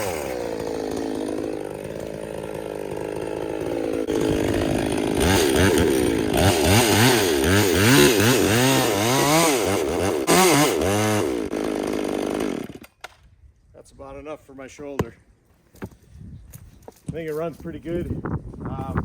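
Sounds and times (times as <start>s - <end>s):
chainsaw revving: 0.0s - 12.9s.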